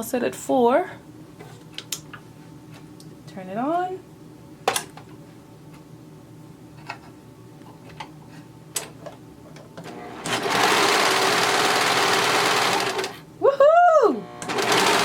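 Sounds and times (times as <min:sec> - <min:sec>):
serger running: 0:09.9 - 0:13.1, 0:14.2 - 0:15.0.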